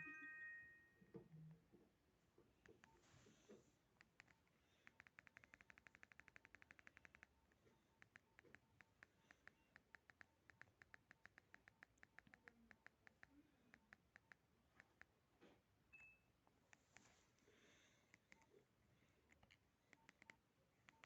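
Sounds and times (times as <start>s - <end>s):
phone keypad ticking: 4.0s - 7.4s, 19.3s - 21.0s.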